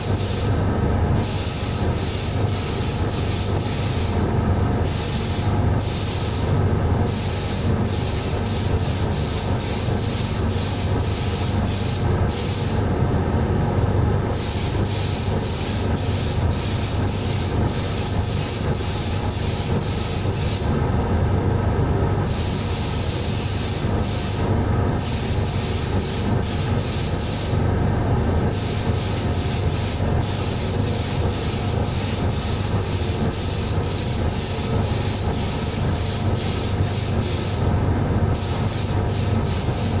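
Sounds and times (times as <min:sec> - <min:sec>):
compressed air gun hissing: 0:00.0 - 0:00.6, 0:01.2 - 0:12.9, 0:14.3 - 0:20.8, 0:22.2 - 0:40.0
low machinery hum: 0:00.0 - 0:40.0.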